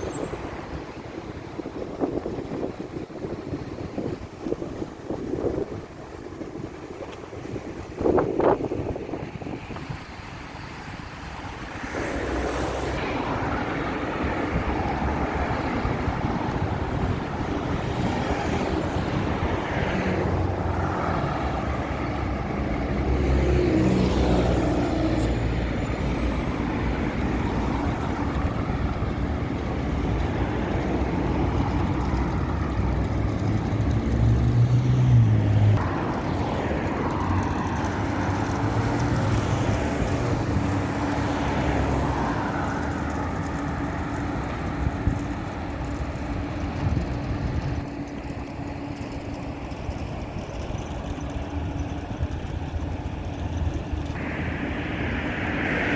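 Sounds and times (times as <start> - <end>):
cars passing: 0.0 - 55.9
loud vehicle rumbling by: 11.2 - 55.9.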